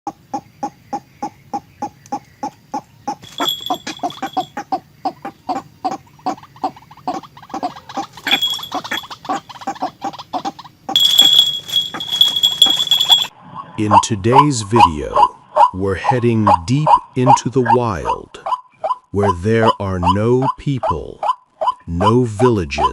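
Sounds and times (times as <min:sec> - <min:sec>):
waterhen clucking: 0:00.1 - 0:13.3.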